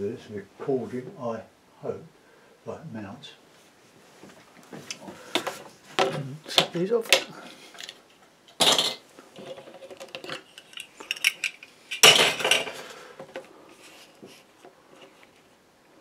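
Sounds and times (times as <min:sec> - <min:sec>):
small hard objects clattering: 0:08.6 - 0:13.5.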